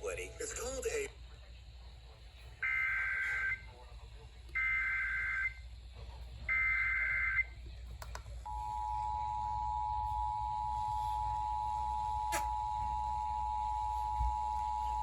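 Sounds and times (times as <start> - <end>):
two-tone alarm: 2.6 - 3.6, 4.6 - 5.6, 6.5 - 7.5, 8.5 - 15.0.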